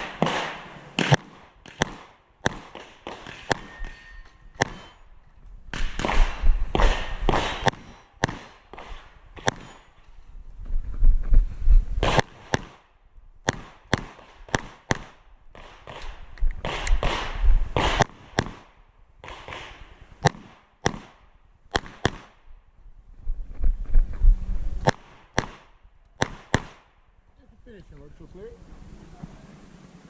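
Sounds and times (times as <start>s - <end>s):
pistol shots: 0.0s - 4.0s, 4.6s - 5.0s, 5.7s - 9.9s, 12.0s - 22.4s, 24.8s - 26.9s
rustling movement noise: 3.0s - 12.5s, 22.8s - 25.3s.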